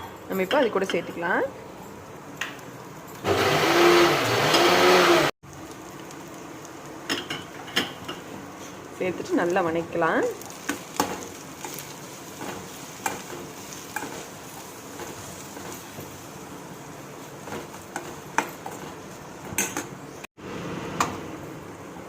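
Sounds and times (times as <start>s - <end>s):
vegetables sizzling in a pan: 5.4s - 22.0s.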